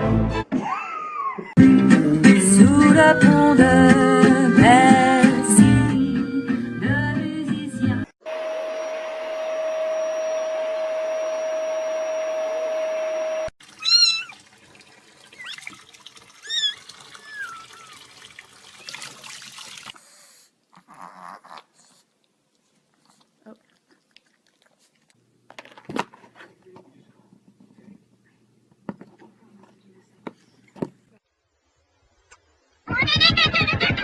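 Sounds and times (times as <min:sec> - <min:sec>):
cat meowing: 0:13.8 - 0:14.4.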